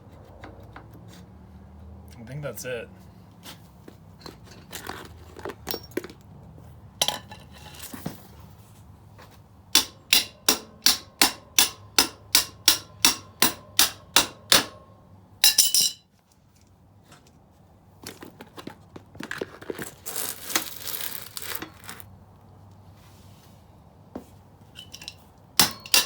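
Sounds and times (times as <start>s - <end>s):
hand tool tapping metal: 9.8s - 14.8s, 15.4s - 16.0s, 24.8s - 26.0s.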